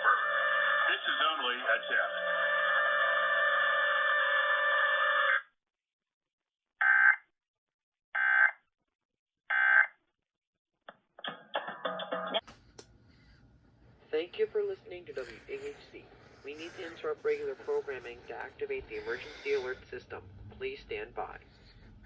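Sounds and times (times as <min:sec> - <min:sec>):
radio station audio: 0:00.9 - 0:02.3, 0:14.0 - 0:21.6.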